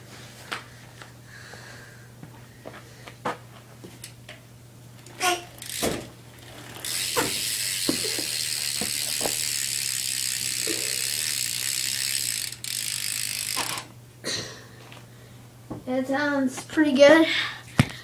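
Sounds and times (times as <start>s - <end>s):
bike hub freewheel buzzing: 4.0s - 14.0s.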